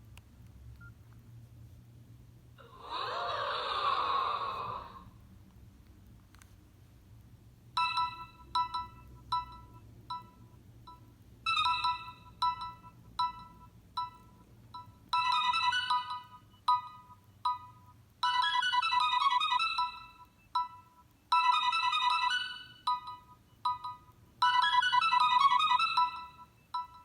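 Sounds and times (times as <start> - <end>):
synthesized ringtone melody: 7.8 - 27.0.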